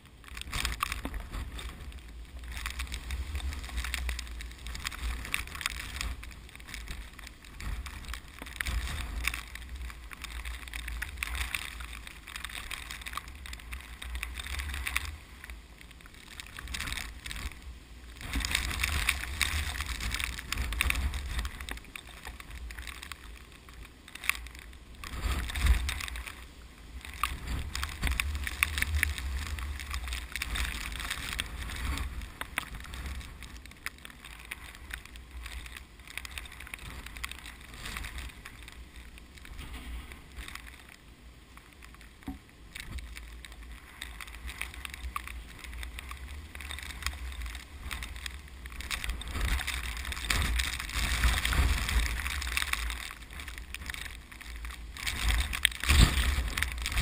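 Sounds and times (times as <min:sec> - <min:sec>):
rice plants rustling: 0:00.0 - 0:57.0
strong wind gusts on microphone: 0:41.6 - 0:57.0.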